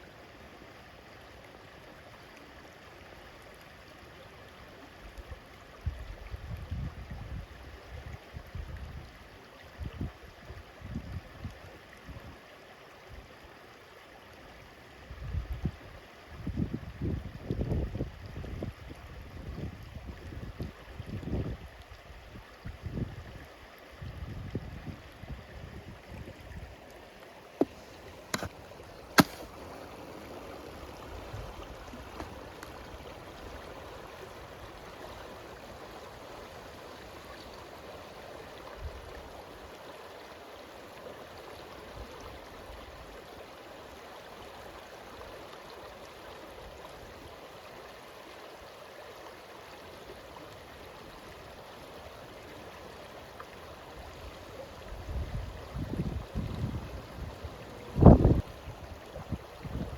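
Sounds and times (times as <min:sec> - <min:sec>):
stream running: 0:00.0 - 0:59.9
wind rumbling on microphone: 0:05.8 - 0:09.2, 0:10.8 - 0:11.6, 0:15.1 - 0:15.8, 0:16.4 - 0:23.4, 0:24.0 - 0:26.8, 0:54.0 - 0:59.9.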